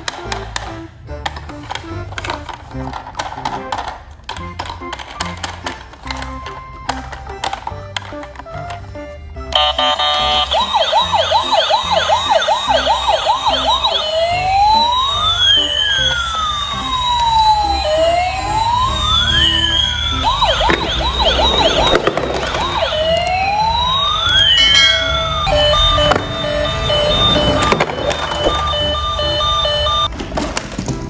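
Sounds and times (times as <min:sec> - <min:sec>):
emergency vehicle siren: 0:09.5 - 0:30.1.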